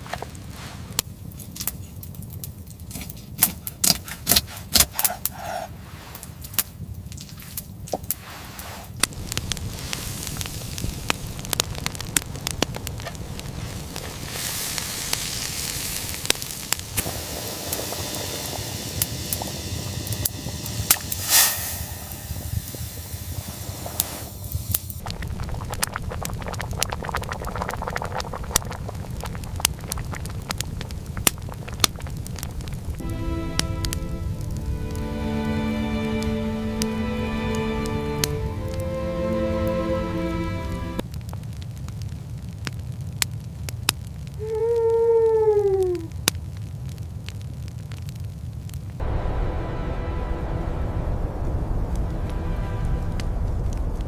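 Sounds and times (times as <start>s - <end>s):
fire crackling and popping: 0.0s - 54.0s
steady rushing noise: 8.2s - 41.0s, 49.0s - 54.0s.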